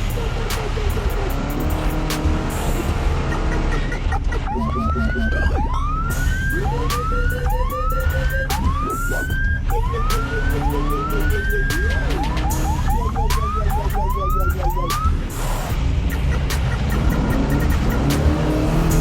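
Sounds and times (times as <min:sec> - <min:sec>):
music with heavy bass line: 0:00.0 - 0:19.0
siren-like rising whoop: 0:04.4 - 0:15.1.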